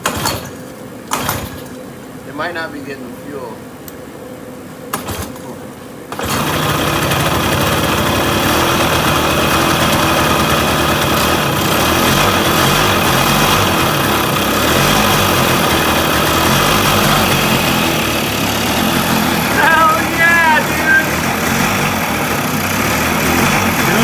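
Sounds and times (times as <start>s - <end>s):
two-stroke engine running unevenly: 6.1s - 24.0s.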